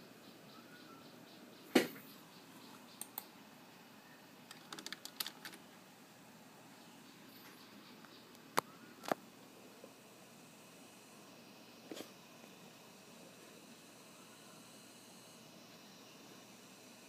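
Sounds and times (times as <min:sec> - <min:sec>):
low background hiss: 0:00.0 - 0:17.0
computer keyboard clicks and taps: 0:04.5 - 0:05.6.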